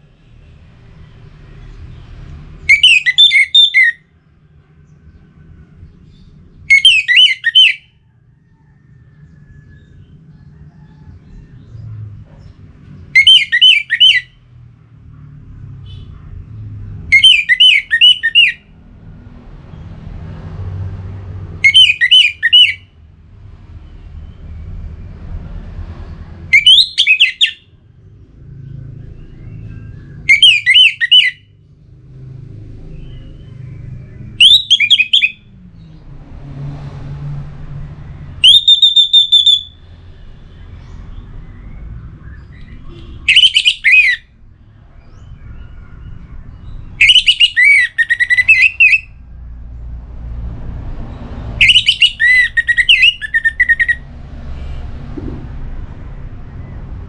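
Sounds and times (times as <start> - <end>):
thrush singing whistles: 1.9 - 4.1, 6.1 - 8.0, 13.1 - 14.4, 17.1 - 18.7, 21.5 - 22.9, 26.5 - 27.7, 29.3 - 31.6, 34.4 - 35.5, 38.4 - 40.6, 41.2 - 44.3, 45.0 - 49.2, 51.6 - 54.1.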